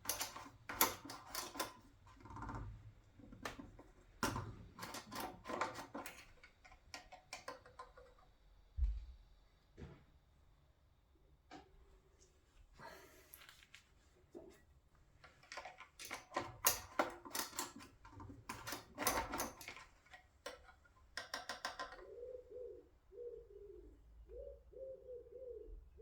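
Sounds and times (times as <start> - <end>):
quick clicks and rattles: 0.0 - 2.8, 3.4 - 8.3, 15.2 - 22.0
pigeon cooing: 21.7 - 26.0.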